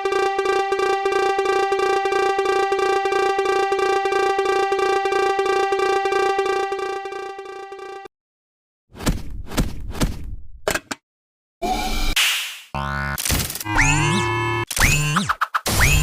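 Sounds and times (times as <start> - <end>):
level crossing alarm pulsing: 0.0 - 8.1, 12.8 - 15.2.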